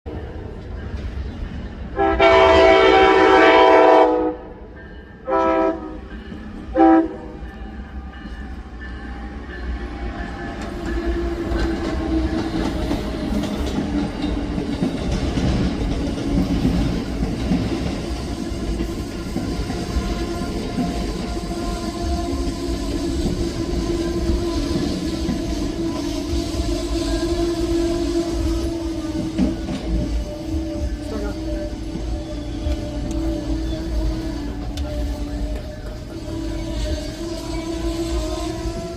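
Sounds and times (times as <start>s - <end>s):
train rumbling on rails: 0.1s - 38.9s
train horn blasts: 1.9s - 7.5s, 20.0s - 29.4s, 30.1s - 38.9s.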